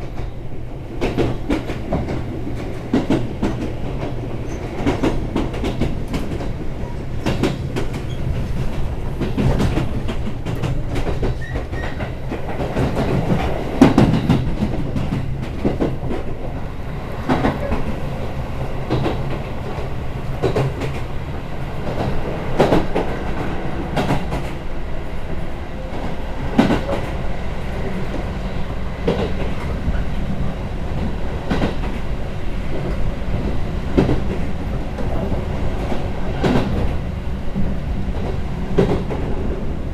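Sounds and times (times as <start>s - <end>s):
train rumble inside passenger car: 0.0s - 39.9s
wheels clacking over rail joints: 1.0s - 18.1s, 18.8s - 21.1s.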